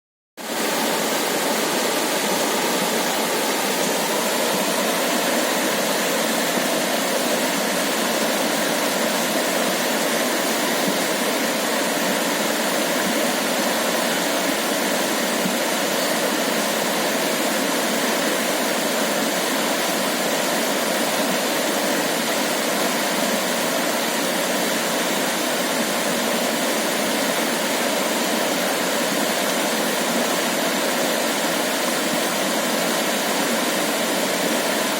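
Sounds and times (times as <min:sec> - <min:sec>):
river water flowing over pebbles: 0:00.4 - 0:34.9.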